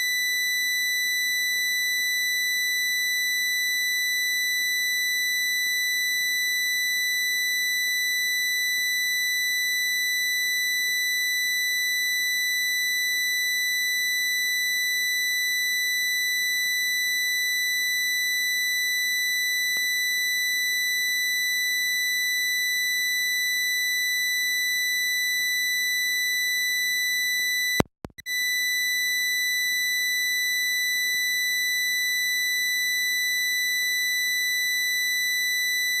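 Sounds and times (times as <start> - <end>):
click: 27.8 - 28.3.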